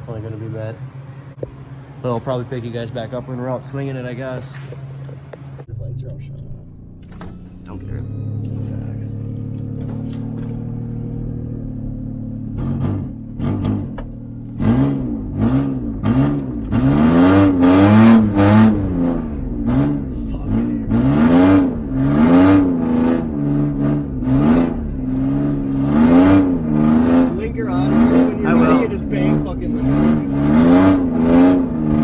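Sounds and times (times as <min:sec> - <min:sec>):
car engine revving hard: 0:07.7 - 0:32.0.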